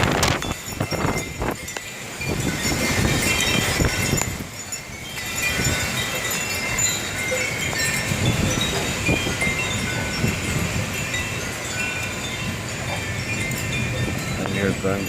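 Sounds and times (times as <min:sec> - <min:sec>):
wind buffeting microphone: 0:00.0 - 0:15.0
wind chimes tinkling: 0:00.0 - 0:15.0.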